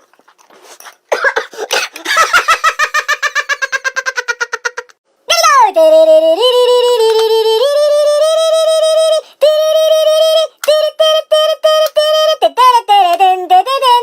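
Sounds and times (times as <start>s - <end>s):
high-pitched voice singing wordlessly: 5.3s - 14.0s.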